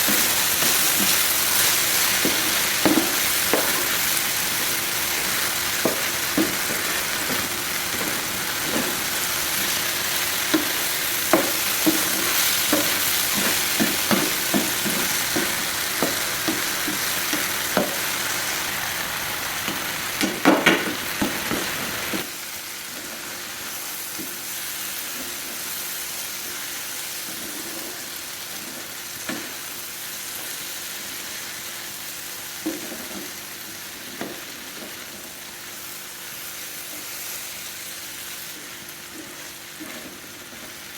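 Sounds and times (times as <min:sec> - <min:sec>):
utensil tapping and scraping pan: 0:00.0 - 0:18.1
okra sizzling in a pan: 0:00.0 - 0:40.9.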